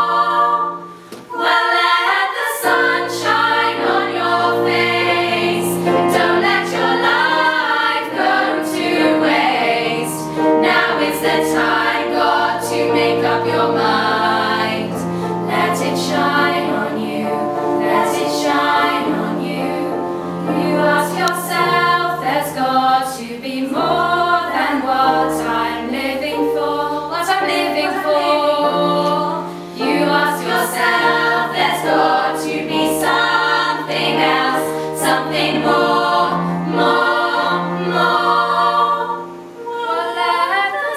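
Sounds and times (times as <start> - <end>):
choir singing: 0.0 - 40.9.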